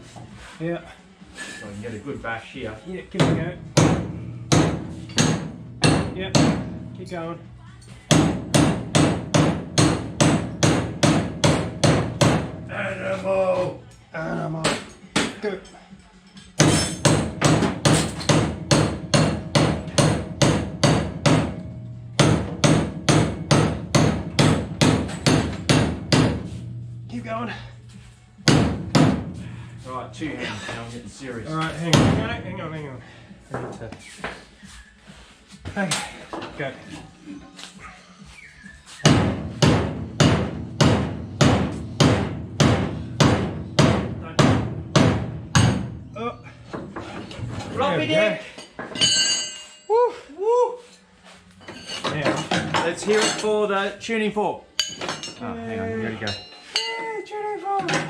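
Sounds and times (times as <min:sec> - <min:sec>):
heavy hammer blows on metal: 0:16.6 - 0:31.0, 0:39.0 - 0:46.0.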